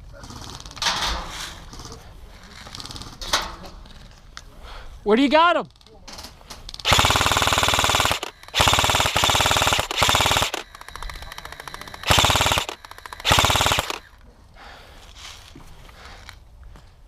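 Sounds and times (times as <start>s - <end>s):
airsoft gun firing bursts: 6.8s - 14.1s.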